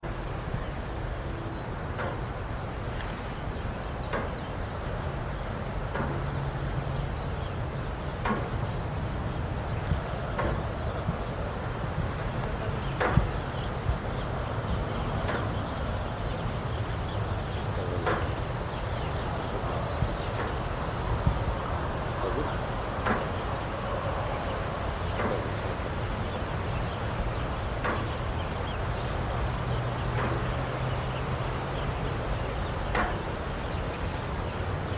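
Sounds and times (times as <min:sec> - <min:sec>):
high-pitched insect chorus: 0:00.0 - 0:34.9
short knocks: 0:12.0 - 0:14.4.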